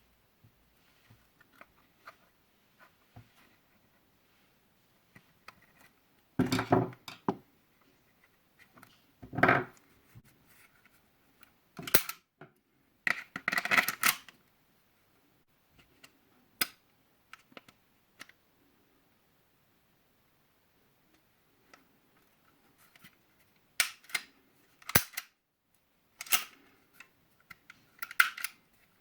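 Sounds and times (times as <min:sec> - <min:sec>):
air pistol parts clicking and rattling: 0:23.8 - 0:25.3, 0:26.2 - 0:26.6, 0:27.5 - 0:28.6.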